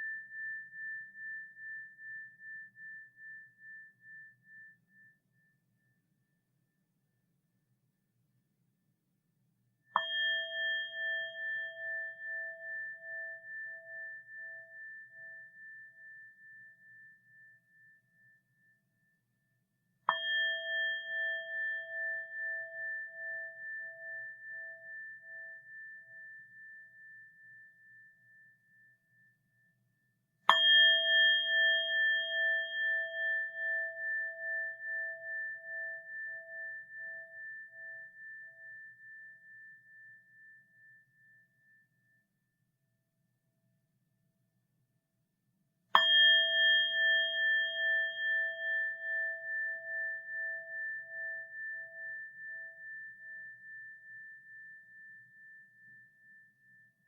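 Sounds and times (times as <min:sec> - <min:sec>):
bowl bell ringing: 0:00.0 - 0:05.3, 0:10.0 - 0:18.0, 0:20.1 - 0:28.6, 0:30.5 - 0:41.5, 0:46.0 - 0:57.0.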